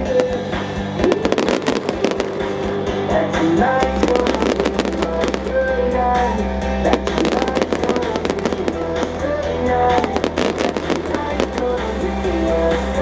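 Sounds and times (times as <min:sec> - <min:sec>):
fireworks bursting and crackling: 0:00.0 - 0:13.0
loud music with bass line: 0:00.0 - 0:13.0.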